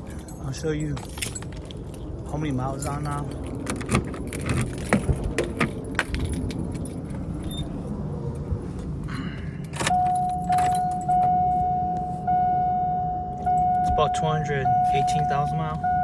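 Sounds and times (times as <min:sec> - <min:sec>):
keys jangling and clicking: 0:00.0 - 0:11.6
dashboard warning chime: 0:09.7 - 0:16.0.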